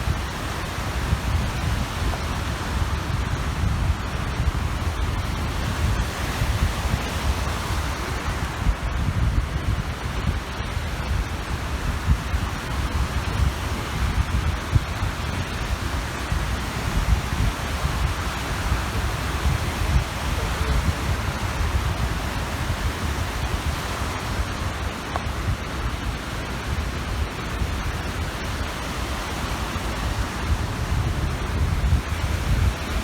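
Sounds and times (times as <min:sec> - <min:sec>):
small waves washing on shore: 0:00.0 - 0:33.0
wind rumbling on microphone: 0:00.0 - 0:33.0.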